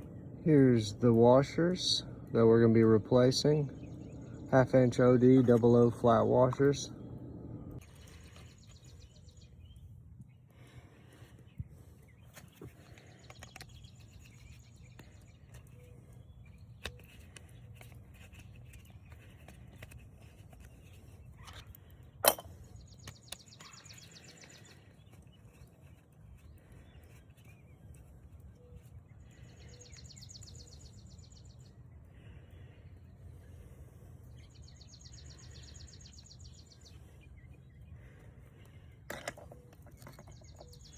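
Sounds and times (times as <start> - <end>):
low outdoor rumble: 0.0 - 23.4.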